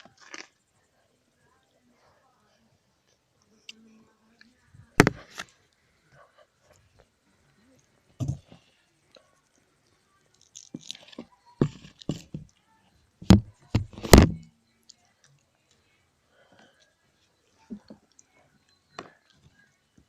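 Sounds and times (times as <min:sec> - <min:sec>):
sharp knocks and cracks: 0:05.0 - 0:05.4, 0:13.2 - 0:14.4.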